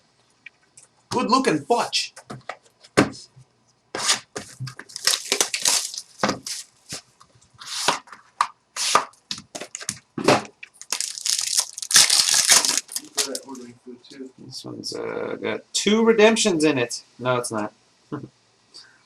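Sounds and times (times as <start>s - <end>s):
packaging being torn open: 4.8s - 6.6s, 10.8s - 13.6s.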